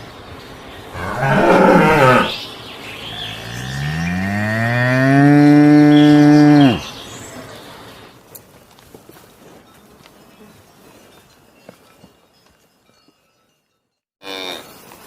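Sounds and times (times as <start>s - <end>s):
cow mooing: 1.0s - 2.4s, 3.1s - 6.9s.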